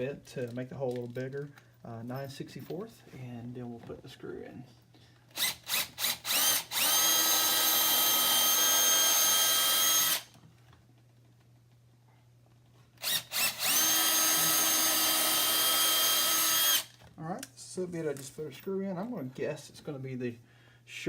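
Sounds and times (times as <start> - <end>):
electric drill drilling wood: 5.3 - 10.4, 13.0 - 17.0.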